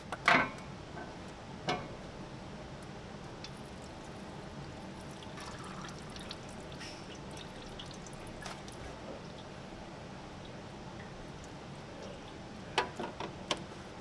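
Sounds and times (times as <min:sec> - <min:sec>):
air conditioning hum: 0:00.0 - 0:14.0
fluid pouring and dripping: 0:03.3 - 0:09.6.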